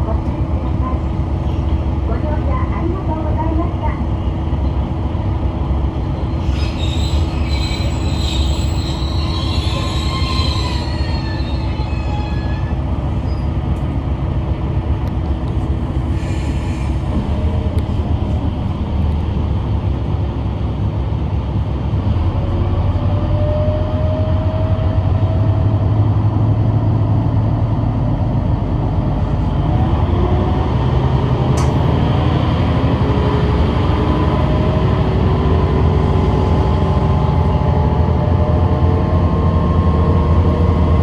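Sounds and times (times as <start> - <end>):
railcar low rumble: 0.0 - 41.0
high wheel squeal: 6.3 - 13.5.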